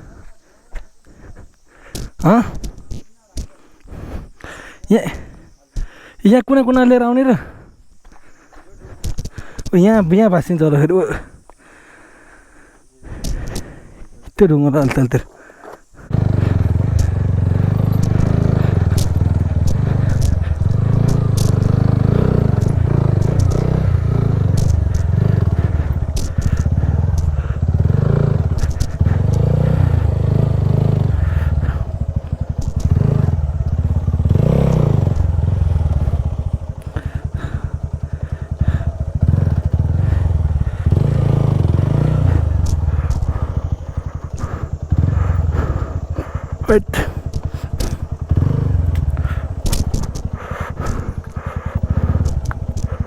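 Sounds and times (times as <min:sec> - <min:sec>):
motorcycle engine running: 0:00.0 - 0:05.6, 0:06.7 - 0:11.6, 0:15.8 - 0:53.0
stones and gravel knocking: 0:49.6 - 0:51.4.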